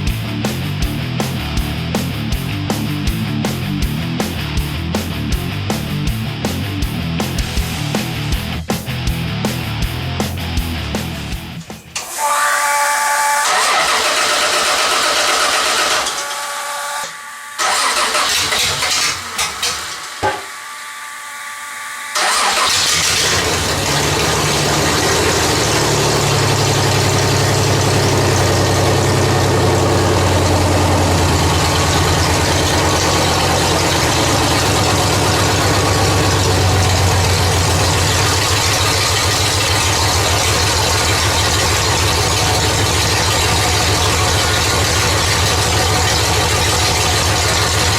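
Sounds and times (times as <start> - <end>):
car engine starting and idling: 10.4 - 12.6, 13.2 - 47.9.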